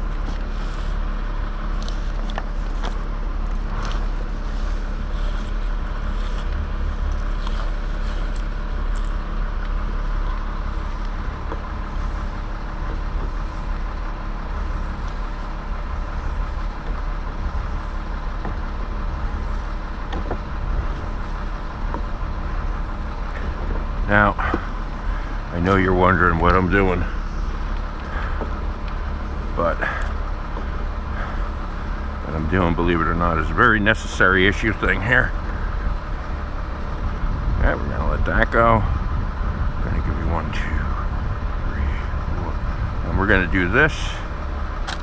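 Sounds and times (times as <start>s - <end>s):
motor idling: 0.0s - 45.0s
faint clicks and knocks: 20.0s - 21.0s.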